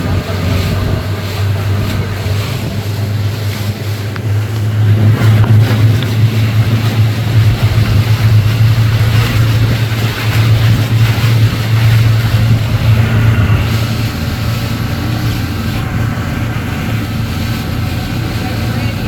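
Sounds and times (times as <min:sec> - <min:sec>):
boat motor humming: 0:00.0 - 0:19.0
water rushing past: 0:00.0 - 0:19.0
wind rushing: 0:00.0 - 0:19.0.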